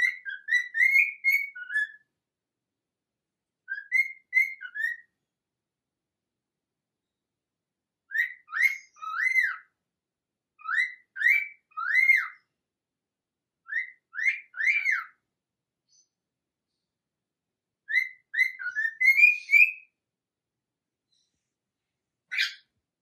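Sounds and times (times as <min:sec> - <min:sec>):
parrot whistling: 0:00.0 - 0:02.0, 0:03.7 - 0:05.1, 0:08.1 - 0:09.7, 0:10.6 - 0:12.4, 0:13.7 - 0:15.2, 0:17.9 - 0:19.9.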